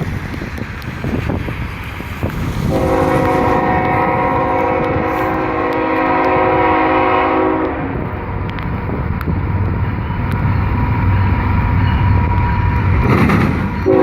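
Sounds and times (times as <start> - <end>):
diesel locomotives rumbling past: 0.0 - 14.0
locomotive air horn: 2.6 - 8.0.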